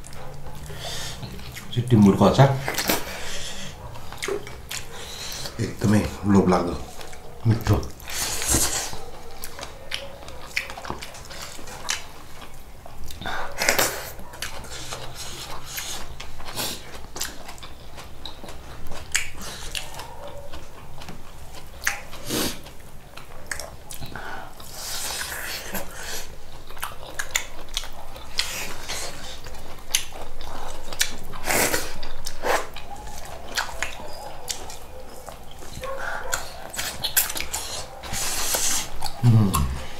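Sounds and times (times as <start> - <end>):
person chewing food: 0.0 - 39.9
mouth smacks: 30.9 - 39.9.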